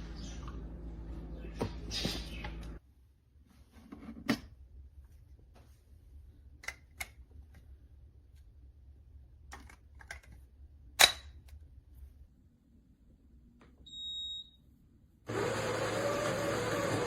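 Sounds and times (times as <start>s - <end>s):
espresso machine running loudly: 15.3s - 17.0s.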